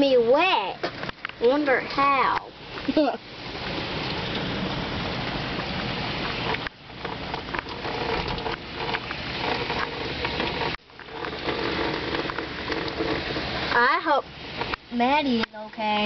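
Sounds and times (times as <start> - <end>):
heavy rain hissing: 1.4 - 7.4.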